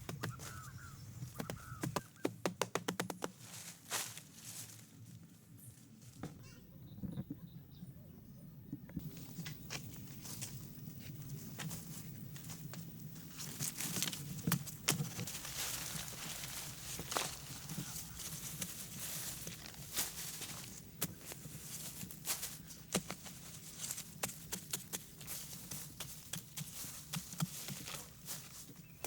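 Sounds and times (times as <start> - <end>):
rustling and scraping: 9.0 - 29.0.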